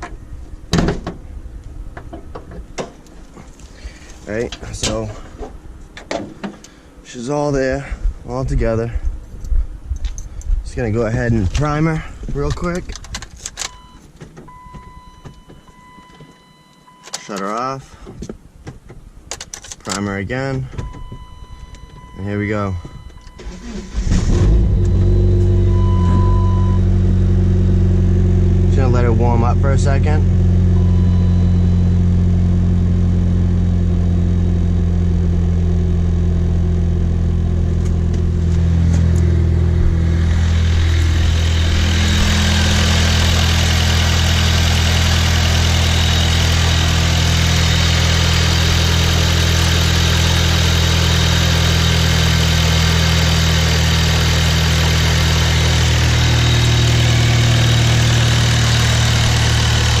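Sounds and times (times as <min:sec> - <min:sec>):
car engine idling: 0:22.9 - 1:00.0.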